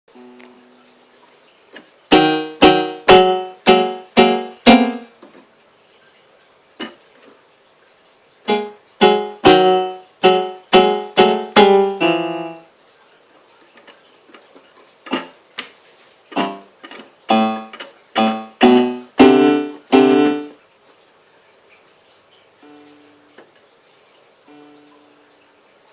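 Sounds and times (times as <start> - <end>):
keyboard notes and chords: 0.1 - 0.9, 2.1 - 5.2, 8.5 - 12.7, 15.1 - 15.3, 16.3 - 20.6, 22.6 - 23.4, 24.5 - 25.3.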